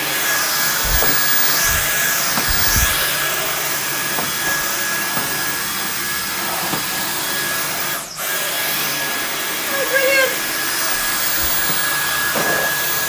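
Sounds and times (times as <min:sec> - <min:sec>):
vacuum cleaner running: 0:00.0 - 0:13.0
vacuum head knocking: 0:00.5 - 0:08.8.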